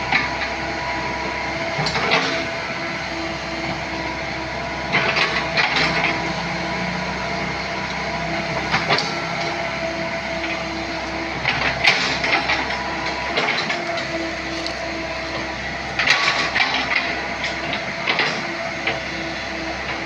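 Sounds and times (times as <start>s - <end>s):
excavator engine and hydraulics: 0.0s - 20.0s
clatter and scraping: 4.9s - 6.4s, 7.4s - 19.0s.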